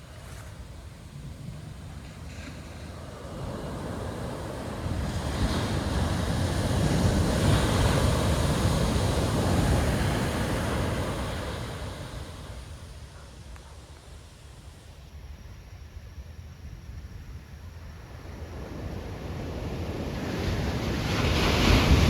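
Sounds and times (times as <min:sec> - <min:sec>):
waves crashing on beach: 0:01.0 - 0:12.9, 0:19.2 - 0:22.0.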